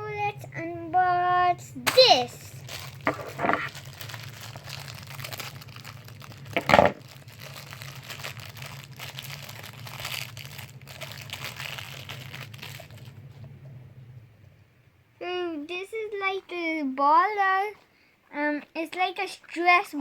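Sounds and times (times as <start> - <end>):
plastic wrapping crinkling: 1.9 - 13.5.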